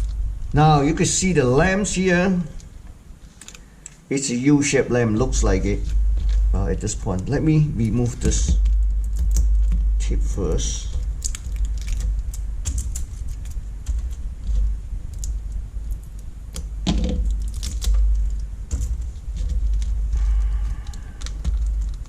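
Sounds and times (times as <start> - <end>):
steady low hum: 0.0 - 22.0
small plastic parts clicking and rattling: 2.5 - 4.1, 7.9 - 22.0.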